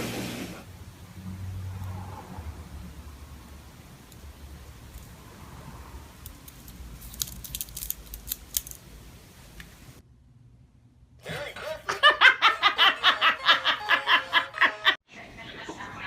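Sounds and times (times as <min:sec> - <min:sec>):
person laughing hard: 0:11.2 - 0:15.0.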